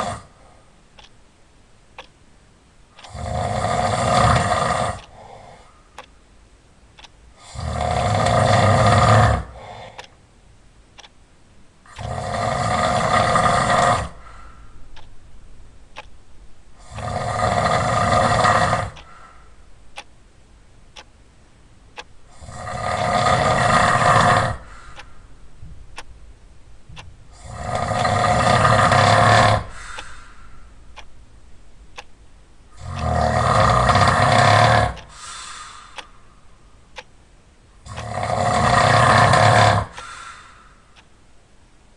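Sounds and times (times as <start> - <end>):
faint ticks: 0.0 - 1.2, 1.9 - 2.2, 2.9 - 6.2, 6.9 - 10.3, 10.9 - 11.2, 11.8 - 15.2, 15.9 - 16.2, 16.8 - 20.2, 20.9 - 21.2, 21.9 - 26.2, 26.8 - 31.2, 31.9 - 32.2, 32.8 - 37.2, 37.8 - 41.2
loud rasping snoring: 3.0 - 5.1, 7.4 - 9.6, 11.9 - 14.2, 16.8 - 19.1, 22.3 - 24.6, 27.4 - 29.7, 32.8 - 35.1, 37.8 - 40.0.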